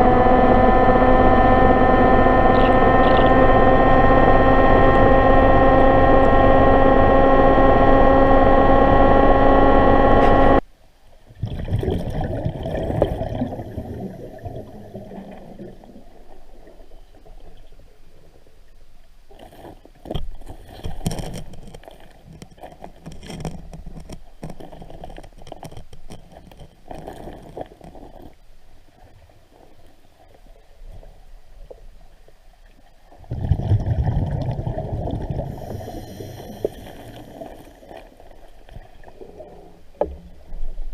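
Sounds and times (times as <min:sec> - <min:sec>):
engine running: 0:00.0 - 0:10.6
knocks and scrapes: 0:19.4 - 0:28.4.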